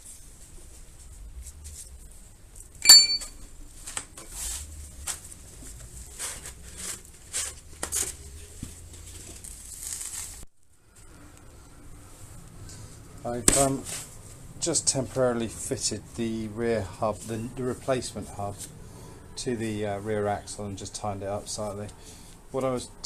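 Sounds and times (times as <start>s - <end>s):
sharp ringing metallic strike: 2.8s - 3.4s.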